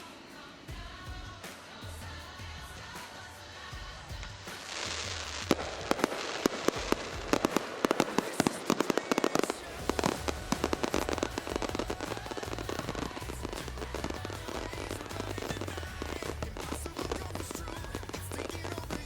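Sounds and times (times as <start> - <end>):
fireworks sharp reports: 3.9 - 19.0
fireworks crackling pops: 4.3 - 19.0.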